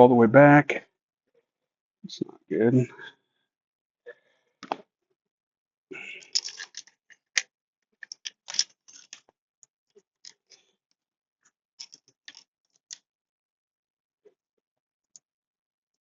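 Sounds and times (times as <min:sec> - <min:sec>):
tools and metal parts clacking: 0:06.0 - 0:07.4, 0:08.0 - 0:09.2, 0:11.8 - 0:12.4.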